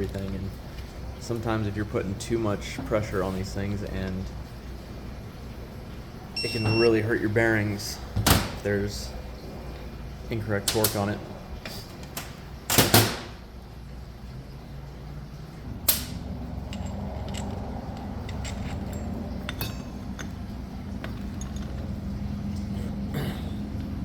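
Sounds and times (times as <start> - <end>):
steady low hum: 0.0 - 24.0
metal tools clinking: 16.6 - 22.6.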